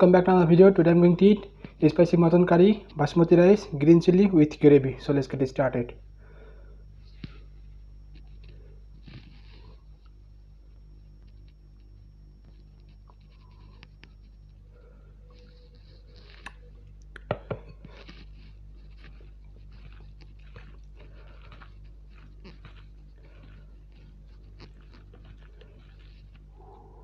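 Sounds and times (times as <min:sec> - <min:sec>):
steady low hum: 0:00.0 - 0:27.0
chewing and crunching food: 0:06.4 - 0:27.0.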